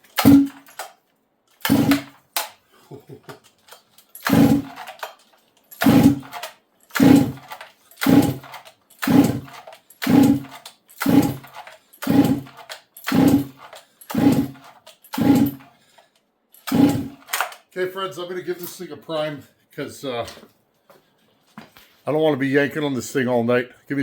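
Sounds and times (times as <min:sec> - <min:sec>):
chainsaw recoil starter pulls: 0:00.0 - 0:00.9, 0:01.5 - 0:02.5, 0:03.4 - 0:15.8, 0:16.6 - 0:17.6
engine cranking without catching: 0:00.0 - 0:00.9, 0:01.6 - 0:02.5, 0:03.4 - 0:15.7, 0:16.6 - 0:17.6.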